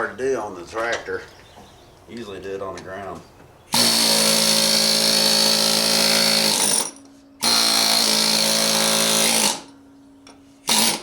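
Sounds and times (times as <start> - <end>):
pneumatic air hammer: 3.7 - 9.7, 10.6 - 11.0.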